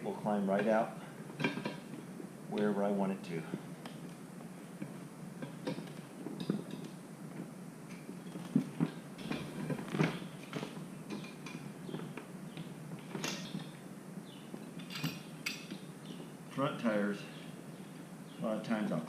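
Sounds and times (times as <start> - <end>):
rubber tire creaking: 8.2 - 10.8
metal tools clinking on wheel rim: 14.6 - 15.8.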